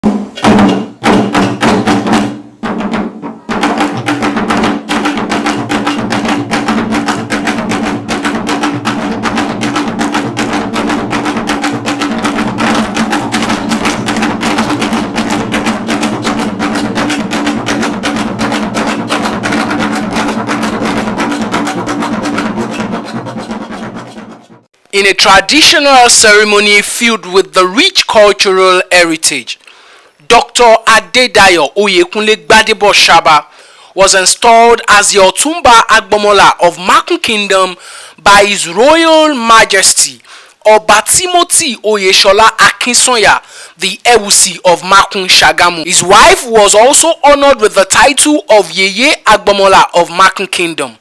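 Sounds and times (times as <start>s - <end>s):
music with fast dense drumming: 0.0s - 24.7s.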